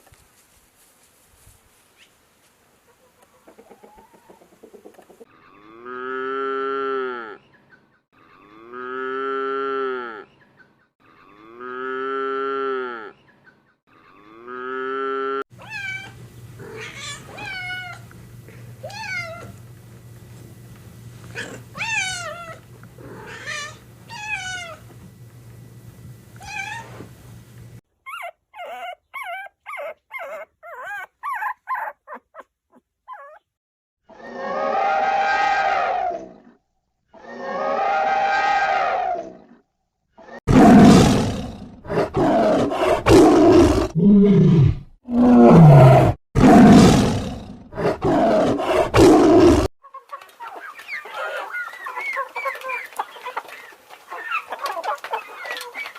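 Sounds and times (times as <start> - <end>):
cow mooing: 5.3 - 7.4, 8.2 - 10.3, 11.0 - 13.2, 13.9 - 15.4.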